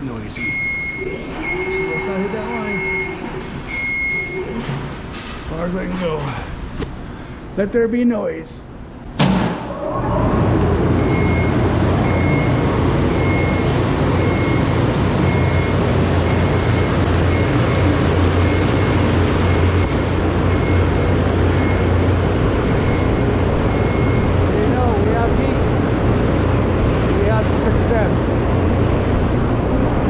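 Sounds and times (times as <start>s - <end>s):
electronic alarm beeping: 0.3s - 4.5s, 11.0s - 25.0s.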